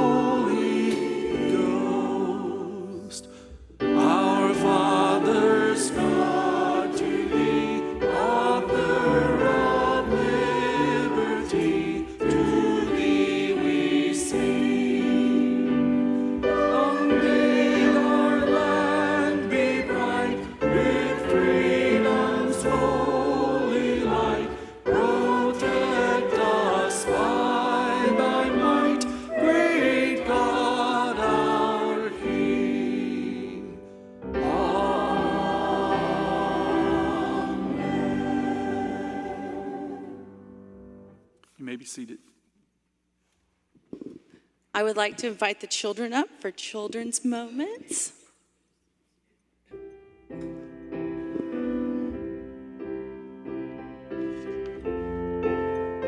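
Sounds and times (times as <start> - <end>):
church choir singing a hymn: 0.0 - 40.6.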